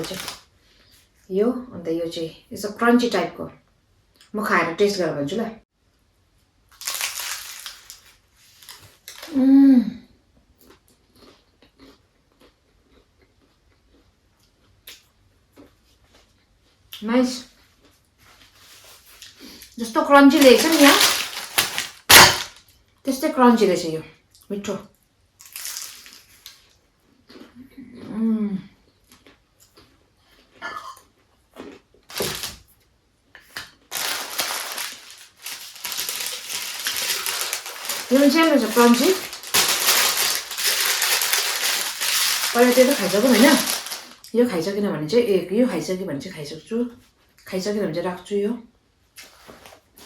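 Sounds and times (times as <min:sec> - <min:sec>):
crunchy taco chewing: 0:06.7 - 0:09.3, 0:10.6 - 0:16.8, 0:25.4 - 0:27.6, 0:29.0 - 0:32.8, 0:33.4 - 0:44.3
crunchy taco being eaten: 0:10.6 - 0:16.9, 0:25.4 - 0:27.6, 0:28.9 - 0:32.6.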